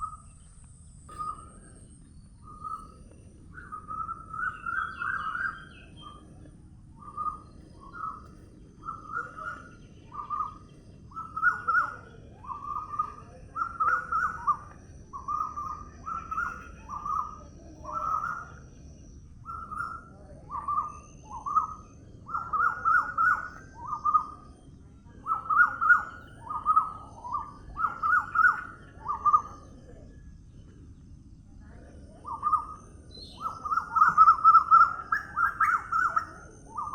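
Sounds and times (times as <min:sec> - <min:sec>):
bird calling: 0:00.0 - 0:30.0, 0:31.8 - 0:36.9.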